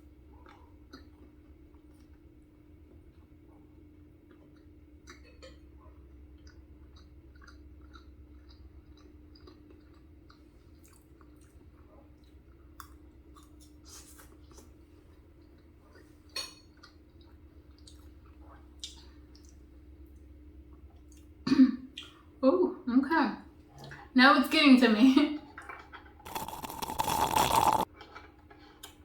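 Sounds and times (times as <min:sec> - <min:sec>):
faint steady hum: 0:00.0 - 0:29.0
wet chewing mouth clicks: 0:04.2 - 0:05.6, 0:06.4 - 0:14.7, 0:26.3 - 0:27.9.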